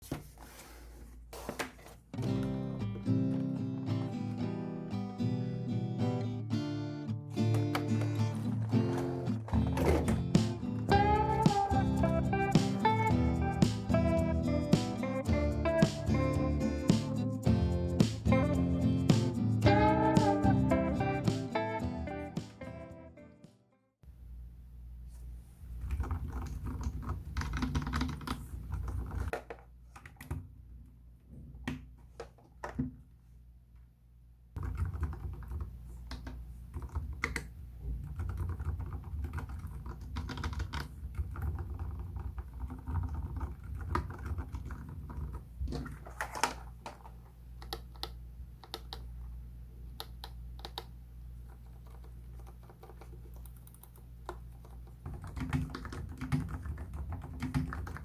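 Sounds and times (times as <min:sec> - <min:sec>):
typing on mechanical keyboard: 0:25.8 - 0:29.3, 0:34.6 - 0:47.0, 0:51.5 - 0:58.0.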